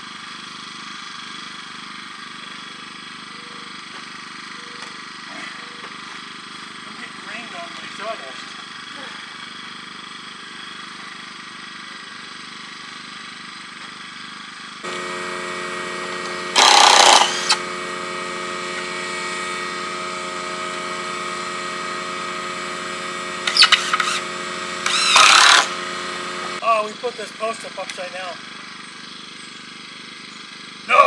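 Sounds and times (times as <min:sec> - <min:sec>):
motor running steadily: 0:00.0 - 0:31.0
power tool burst: 0:14.8 - 0:26.6.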